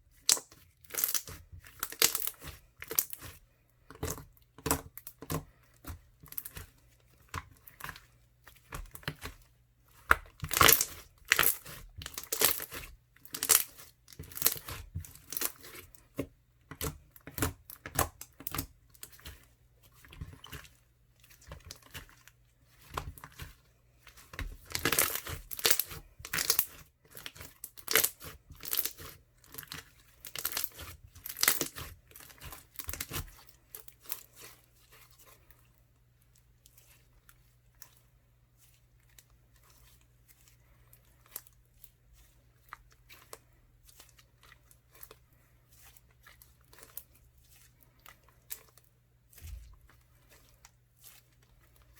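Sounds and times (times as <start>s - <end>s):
slime crackling and popping: 0.1s - 3.4s, 10.0s - 15.8s, 24.4s - 34.5s.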